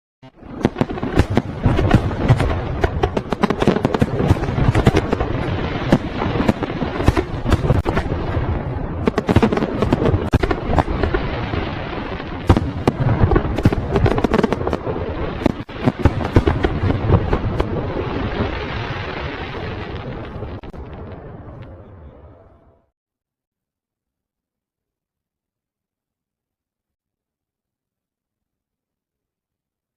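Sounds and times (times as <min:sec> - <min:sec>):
fireworks bangs and crackles: 0:00.3 - 0:22.4.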